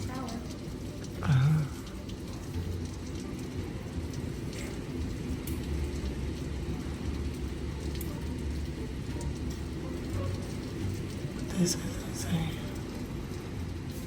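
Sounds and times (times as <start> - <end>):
rain hissing: 0.0 - 14.0
low rumble of wind: 1.8 - 14.0.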